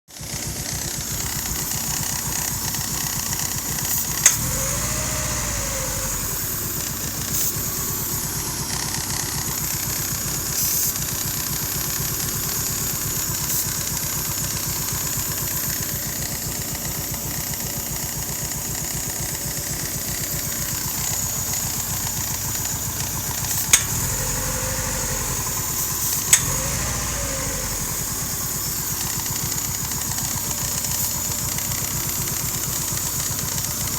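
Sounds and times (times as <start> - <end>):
car engine idling: 0.1 - 33.9
sharp clicks: 0.7 - 7.6, 21.0 - 30.2.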